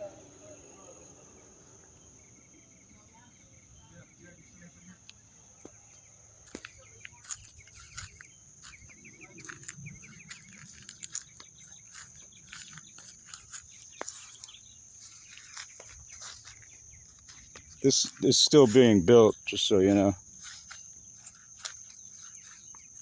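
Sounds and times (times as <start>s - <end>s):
insects buzzing: 0.0s - 23.0s
light clicks and crackles: 9.5s - 14.6s.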